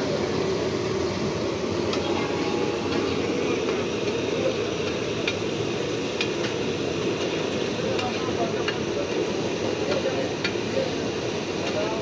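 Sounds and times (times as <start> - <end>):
crowd chatter: 1.7 - 6.0
traffic: 1.8 - 5.6.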